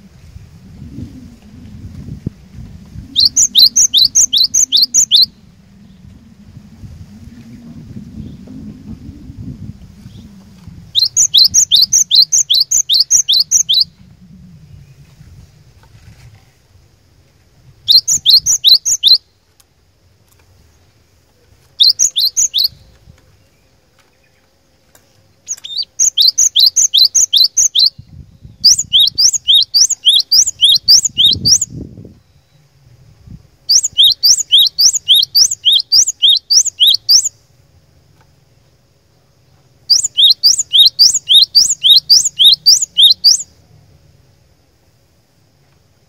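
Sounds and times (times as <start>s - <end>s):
bird singing high whistled notes: 0.8s - 15.1s, 17.8s - 19.3s, 21.8s - 22.9s, 25.5s - 32.8s, 33.6s - 37.4s, 39.8s - 43.6s.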